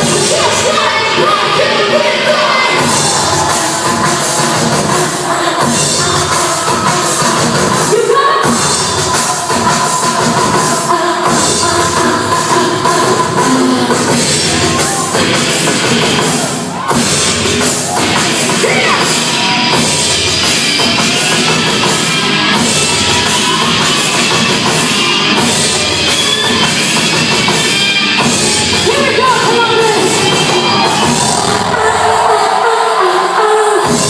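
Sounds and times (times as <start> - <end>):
loud rock music with singing: 0.0 - 34.0.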